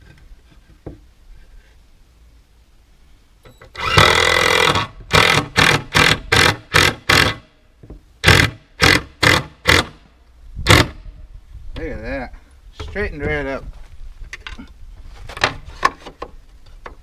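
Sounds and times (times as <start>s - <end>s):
screw gun driving screw into wood: 3.7s - 7.4s, 8.2s - 10.0s.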